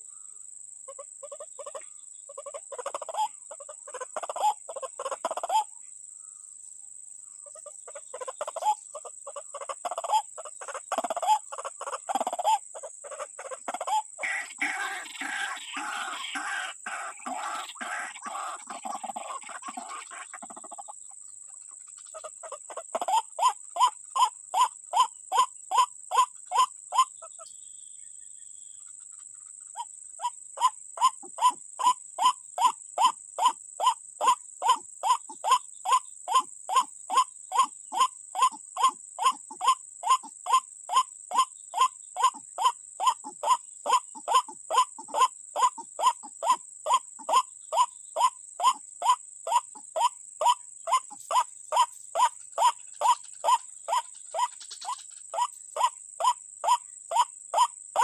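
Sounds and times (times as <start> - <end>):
waterhen calling: 2.4 - 5.7, 7.4 - 20.9.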